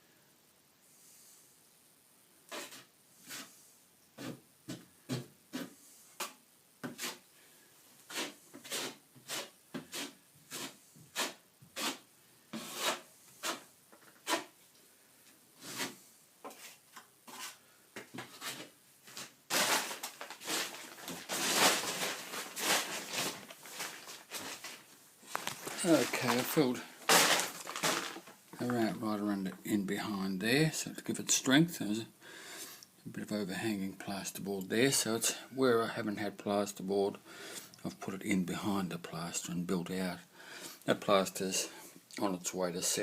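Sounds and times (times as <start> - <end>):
blade scraping wet plaster: 2.5 - 3.5, 5.1 - 7.2, 8.1 - 14.6, 15.6 - 17.6.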